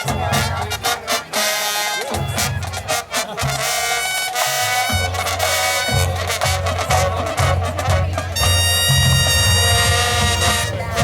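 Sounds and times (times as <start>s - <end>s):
drum hits: 0.0s - 11.0s
marching band brass chords: 0.0s - 11.0s
low bass notes: 4.6s - 11.0s.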